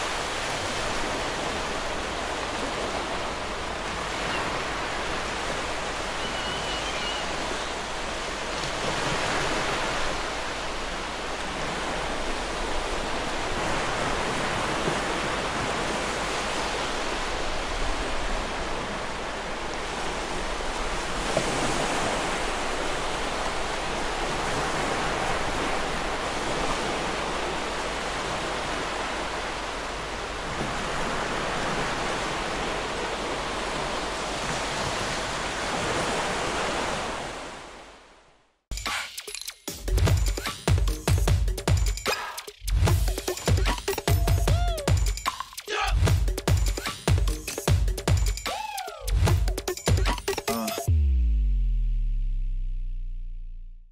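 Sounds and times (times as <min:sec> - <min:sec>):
surf washing onto beach: 0:00.0 - 0:38.0
faint bird call: 0:06.1 - 0:07.7.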